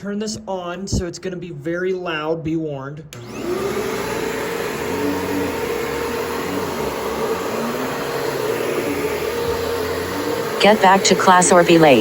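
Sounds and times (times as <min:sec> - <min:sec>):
vacuum cleaner running: 0:03.2 - 0:12.0.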